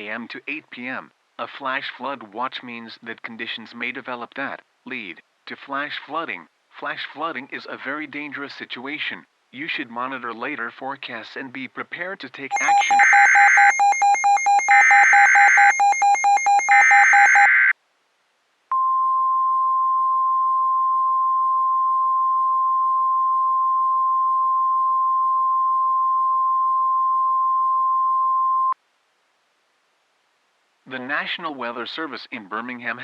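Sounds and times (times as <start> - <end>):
steady warning alarm beep: 12.5 - 17.7
warbling data bursts: 12.5 - 17.7.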